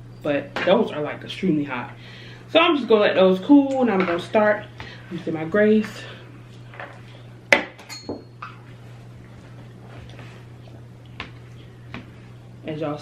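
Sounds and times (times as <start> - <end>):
cutlery clinking against dish: 7.8 - 8.3.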